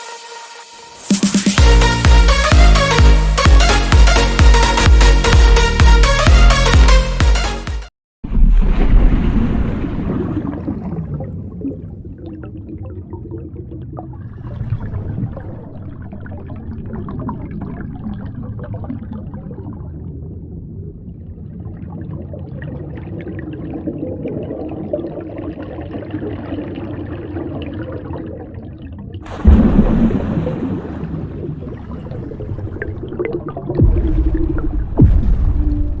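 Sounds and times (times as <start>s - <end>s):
muffled underwater rush: 8.2s - 36.0s.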